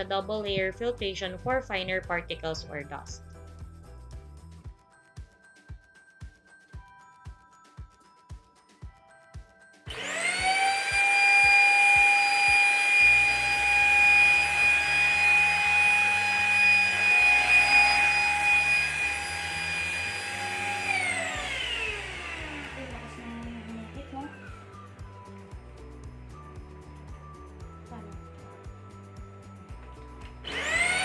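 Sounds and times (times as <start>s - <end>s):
vacuum cleaner motor whine: 9.9s - 26.5s, 27.4s - 31.0s.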